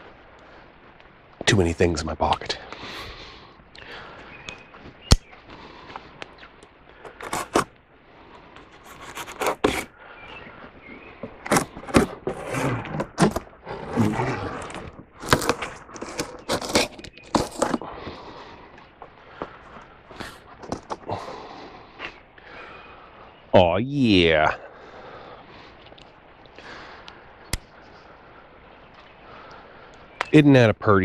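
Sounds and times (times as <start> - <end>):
handling scraping: 4.8 - 22.2.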